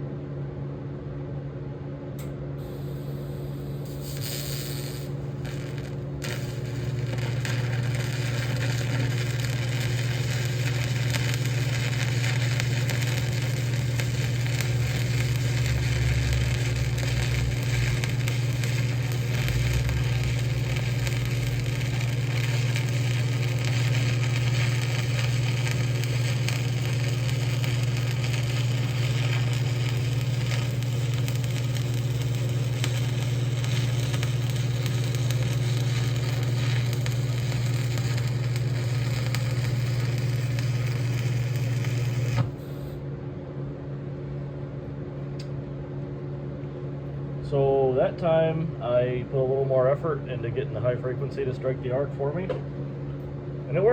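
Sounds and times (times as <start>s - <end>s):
welder low hum: 2.2s - 43.2s, 47.4s - 53.9s
welding arc crackling: 2.6s - 43.0s.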